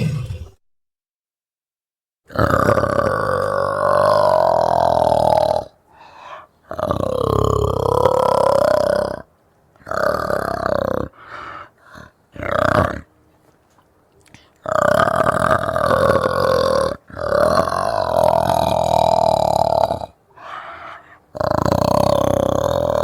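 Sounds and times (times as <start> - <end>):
orangutan calling: 14.6 - 23.0.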